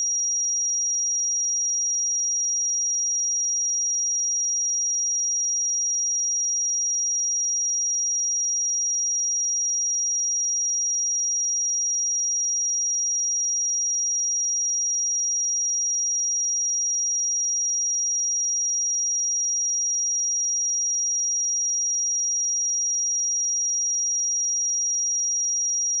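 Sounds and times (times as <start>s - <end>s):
high-pitched sine test tone: 0.0s - 1.7s, 15.2s - 26.0s.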